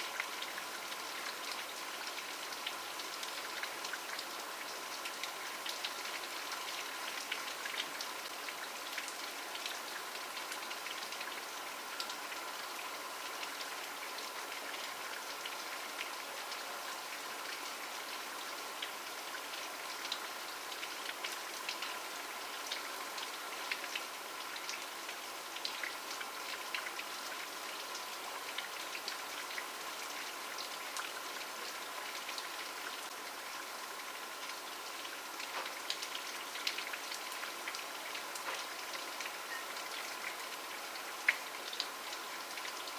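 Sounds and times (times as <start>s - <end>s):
steady rainfall: 0.0s - 42.9s
raindrop ticks: 38.4s - 38.8s.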